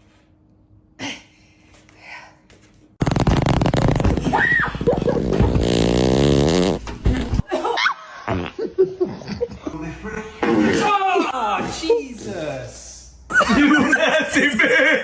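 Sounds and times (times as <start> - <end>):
loud buzzing fart: 3.0 - 7.5, 8.2 - 9.3.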